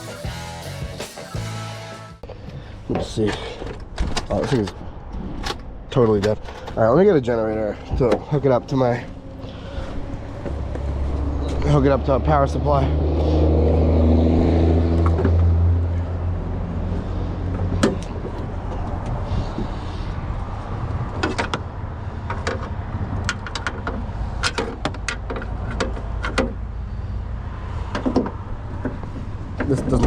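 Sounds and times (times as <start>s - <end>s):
low engine drone: 7.7s - 25.5s
tools clicking and knocking: 21.1s - 21.7s, 22.3s - 26.6s, 27.9s - 29.8s.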